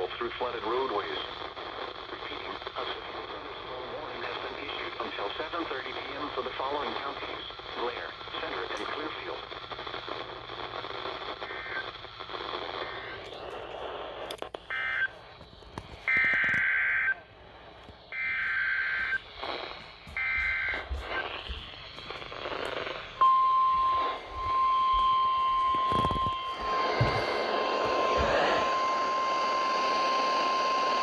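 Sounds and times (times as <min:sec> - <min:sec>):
radio hiss: 0:00.0 - 0:31.0
steady warning tone: 0:18.1 - 0:31.0.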